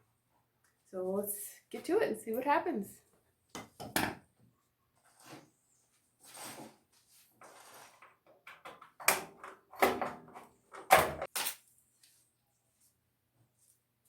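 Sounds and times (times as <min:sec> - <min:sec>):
window screen scraping: 0:05.0 - 0:05.6, 0:06.2 - 0:08.2.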